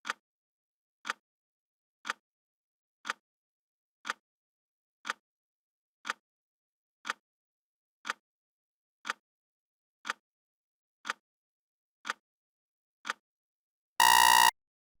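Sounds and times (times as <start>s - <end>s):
loud electronic alarm beep: 14.0s - 14.5s.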